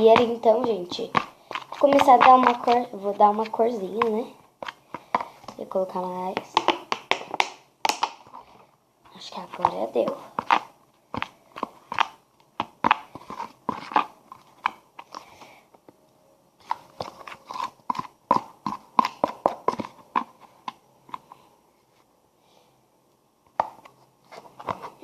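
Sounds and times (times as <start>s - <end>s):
wet sticky slime squelches: 0.0s - 15.4s.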